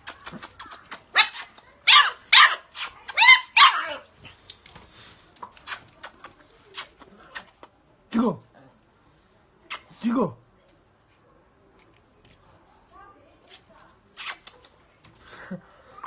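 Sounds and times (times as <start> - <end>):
dog barking: 1.2 - 4.0.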